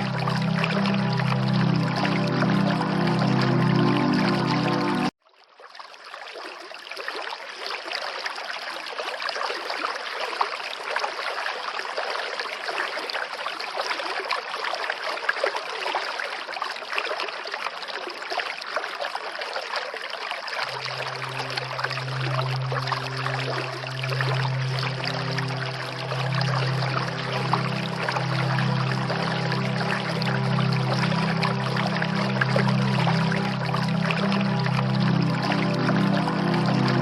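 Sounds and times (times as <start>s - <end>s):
low held music tone: 0.0s - 5.1s, 20.7s - 37.0s
rushing flowing water: 0.0s - 5.1s, 5.7s - 37.0s.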